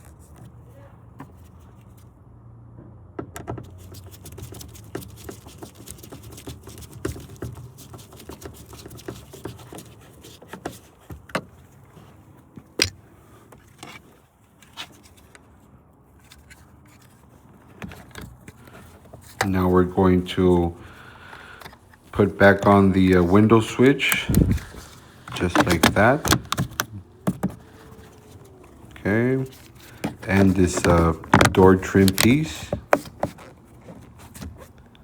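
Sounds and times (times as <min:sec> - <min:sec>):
hand tools clicking and rattling: 0:20.9 - 0:34.2.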